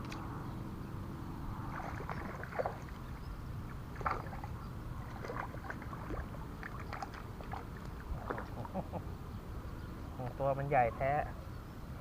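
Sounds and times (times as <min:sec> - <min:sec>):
water splashing: 0:01.6 - 0:08.8.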